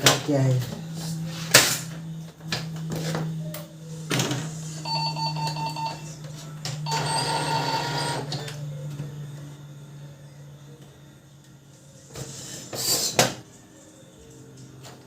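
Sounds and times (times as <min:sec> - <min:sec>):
printer motor humming: 0:00.9 - 0:11.8.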